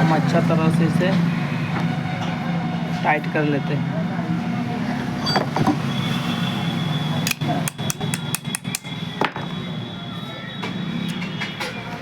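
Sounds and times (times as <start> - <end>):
sharp metallic clicks and knocks: 7.2 - 9.4.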